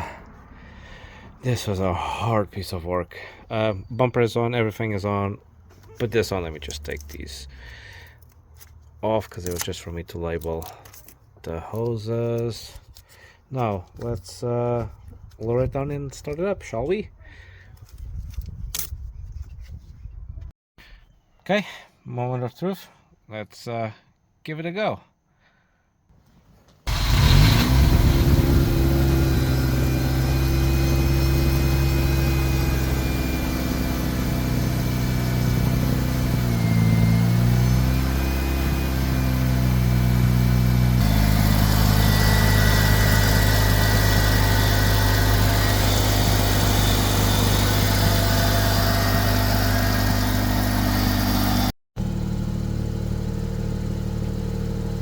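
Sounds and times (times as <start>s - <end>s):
rotary engine starting and idling: 26.9s - 55.0s.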